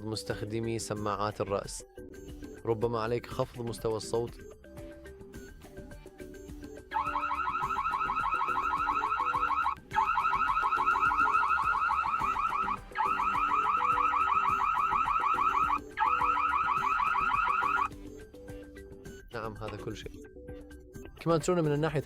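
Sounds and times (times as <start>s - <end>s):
electronic alarm siren warble: 6.9s - 18.0s.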